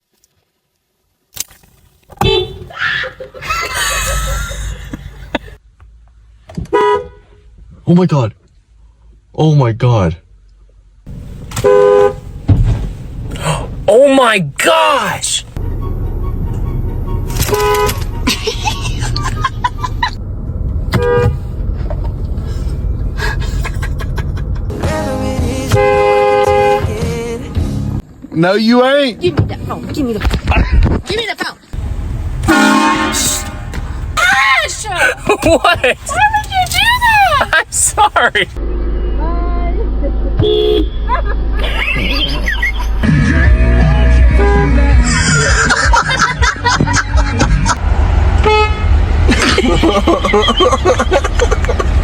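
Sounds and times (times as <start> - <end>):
car horn blast: 2.2 - 2.7, 6.7 - 7.4, 11.5 - 12.3, 15.6 - 18.3, 20.9 - 21.5, 25.6 - 27.1, 32.4 - 34.1, 40.4 - 41.1, 44.1 - 45.0, 48.3 - 49.2
steady low rumble: 15.4 - 25.9, 31.8 - 52.0
loud commotion: 31.8 - 38.6
high wavering cry: 34.2 - 37.7.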